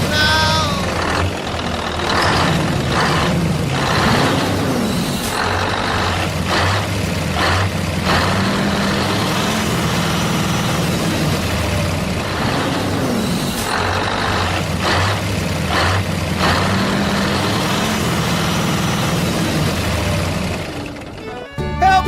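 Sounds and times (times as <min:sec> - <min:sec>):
heavy vehicle engine droning: 0:00.0 - 0:22.0.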